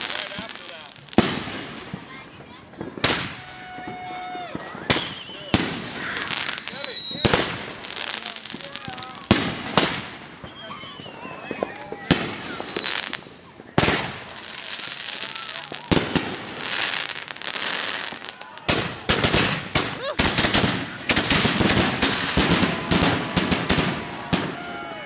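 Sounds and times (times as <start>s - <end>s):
fireworks bangs and crackling: 0.0s - 25.0s.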